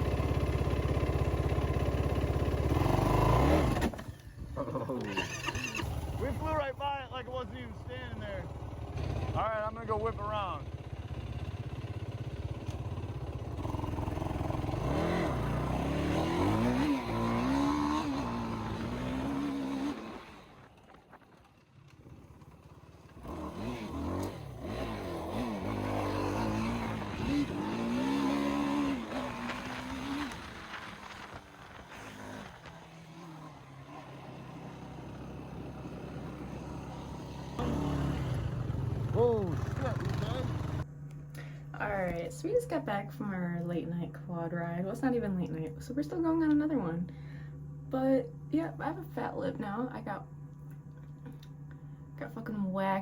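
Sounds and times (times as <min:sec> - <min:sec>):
quad bike engine revving: 0:00.0 - 0:21.0, 0:21.8 - 0:40.9.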